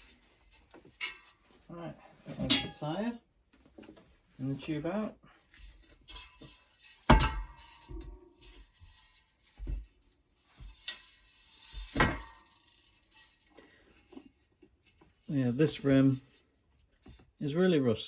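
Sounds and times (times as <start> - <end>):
bicycle wheel metal clanks: 0.0 - 3.2, 3.8 - 17.2.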